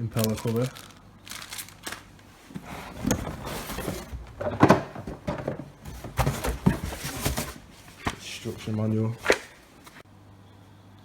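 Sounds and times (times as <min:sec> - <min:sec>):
packaging rustling: 0:00.2 - 0:10.0
parts knocking and clattering: 0:01.5 - 0:09.8.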